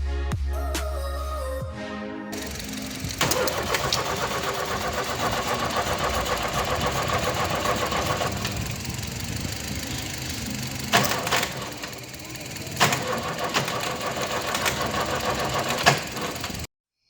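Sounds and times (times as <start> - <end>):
car engine running: 2.4 - 16.7.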